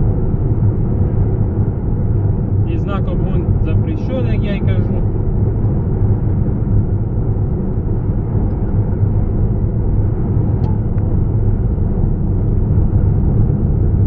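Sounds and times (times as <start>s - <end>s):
engine and road noise inside vehicle: 0.0s - 14.0s.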